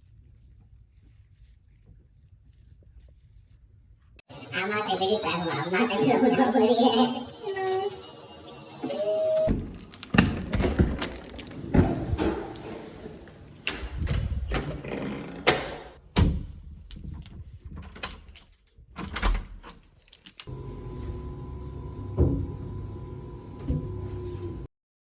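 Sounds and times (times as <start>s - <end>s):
objects knocking and rattling: 9.5s - 15.4s.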